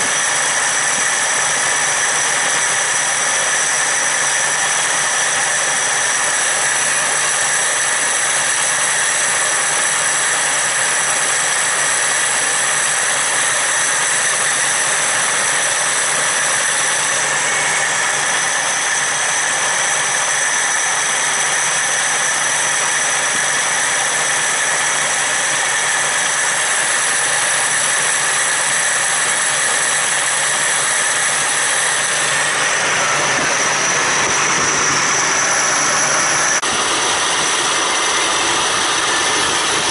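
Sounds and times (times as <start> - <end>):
high whine: 0.0 - 39.9
car engine idling: 28.5 - 39.9.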